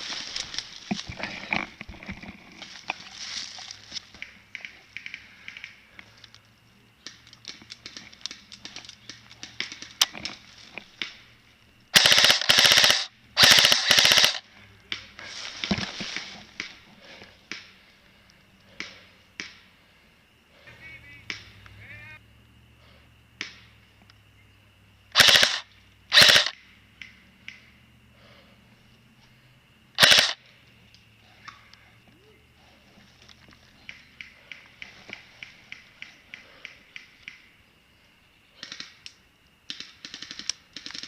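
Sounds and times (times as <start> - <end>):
rapid full-auto bursts: 11.9 - 14.5, 25.1 - 26.6, 30.0 - 30.4
airsoft gun shots: 12.0 - 14.4, 25.2 - 26.5, 30.0 - 30.4.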